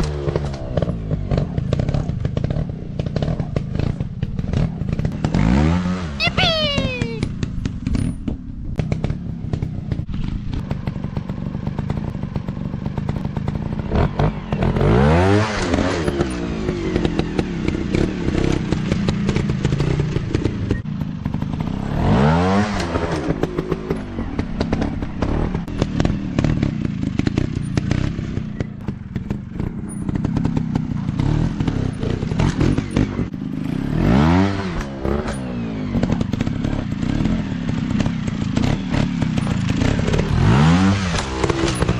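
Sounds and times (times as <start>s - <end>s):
motorcycle engines revving: 0.0s - 41.9s.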